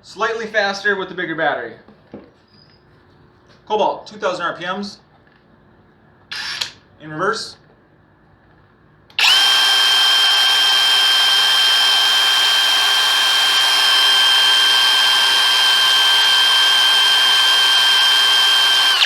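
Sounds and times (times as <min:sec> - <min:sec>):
impact wrench motor whine: 0:09.2 - 0:19.0.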